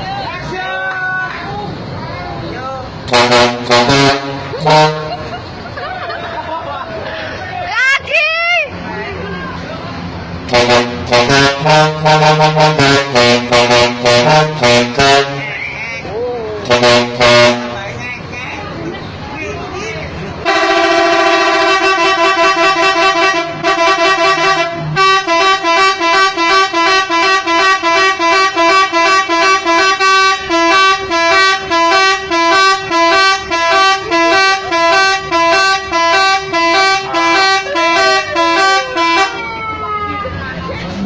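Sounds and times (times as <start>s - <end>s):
musical air horn: 3.1s - 5.3s, 10.5s - 15.5s, 16.7s - 17.8s, 20.4s - 39.4s.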